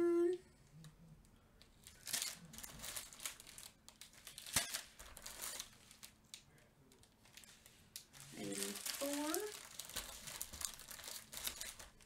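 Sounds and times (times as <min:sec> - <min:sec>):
plastic bags crinkling: 0:01.8 - 0:06.3, 0:06.9 - 0:12.0.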